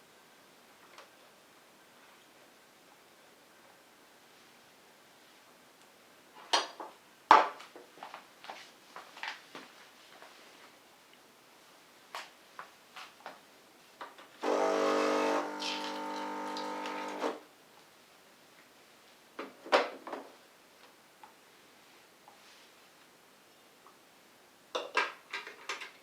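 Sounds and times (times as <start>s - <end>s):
espresso machine pump humming: 14.4s - 17.4s.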